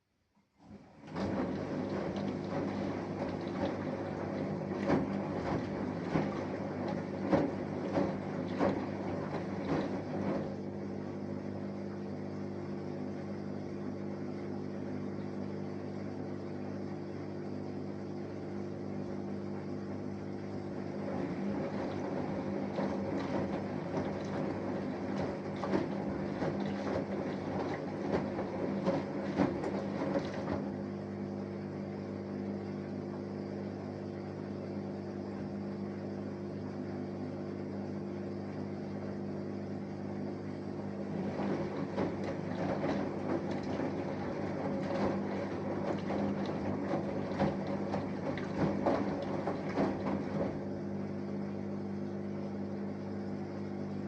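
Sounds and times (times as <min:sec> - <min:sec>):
washing machine drum tumbling: 0:00.7 - 0:12.0, 0:20.7 - 0:31.2, 0:40.2 - 0:51.4
steady hum: 0:01.0 - 0:54.0.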